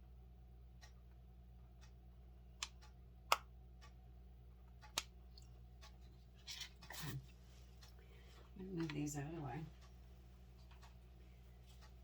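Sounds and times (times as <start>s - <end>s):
low steady hum: 0.0s - 12.0s
clock ticking: 0.7s - 4.1s, 4.7s - 6.0s, 8.6s - 12.0s.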